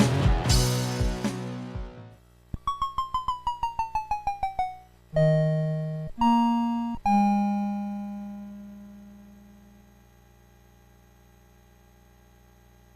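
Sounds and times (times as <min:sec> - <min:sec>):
electronic keyboard music: 0:00.0 - 0:02.1, 0:03.1 - 0:08.7.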